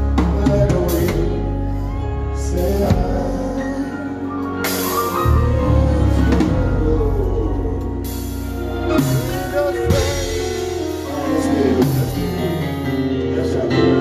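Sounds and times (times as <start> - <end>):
drum kit: 0.0 - 1.5, 4.4 - 14.0
held bass notes: 0.0 - 14.0.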